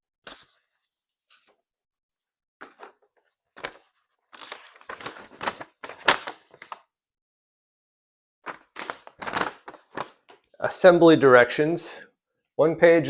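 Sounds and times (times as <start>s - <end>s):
paper rustling: 0.2s - 1.6s, 2.6s - 6.9s, 8.5s - 10.5s.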